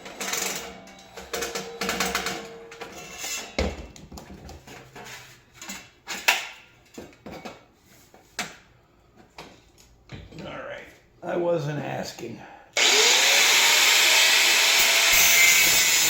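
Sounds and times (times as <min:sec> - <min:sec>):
metal scraping: 0:00.0 - 0:03.6.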